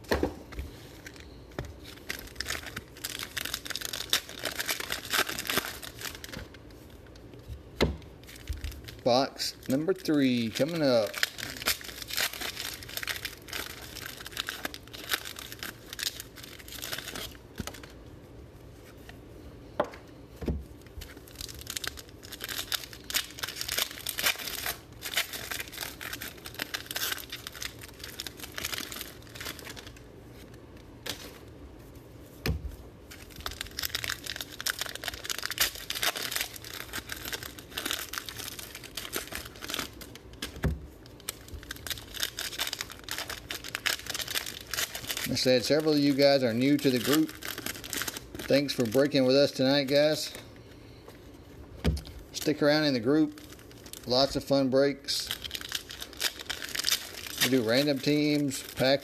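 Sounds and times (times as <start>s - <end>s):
plastic wrapping crinkling and tearing: 0.4s - 7.5s, 8.2s - 19.2s, 20.7s - 59.0s.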